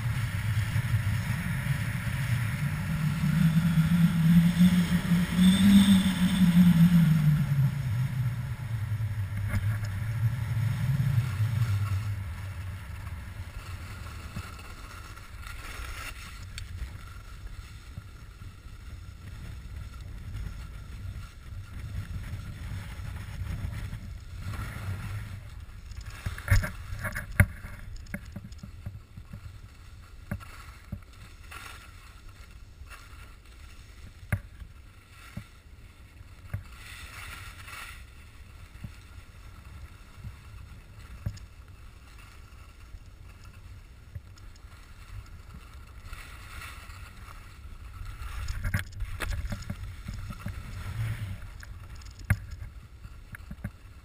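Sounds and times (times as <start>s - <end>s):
wind rushing over microphone: 0.0s - 31.2s
skis sliding over snow: 0.0s - 54.0s.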